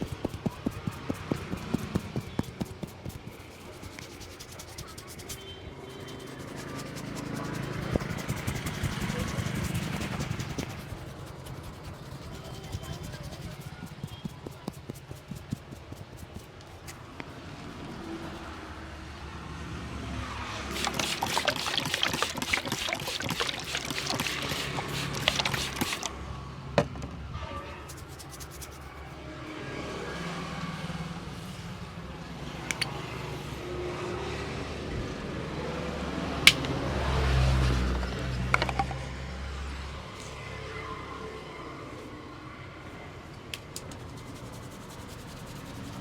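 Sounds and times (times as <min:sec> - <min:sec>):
hands tapping and rubbing head: 0:00.0 - 0:17.0, 0:20.7 - 0:26.1, 0:27.9 - 0:28.9, 0:36.5 - 0:36.7, 0:38.5 - 0:39.0.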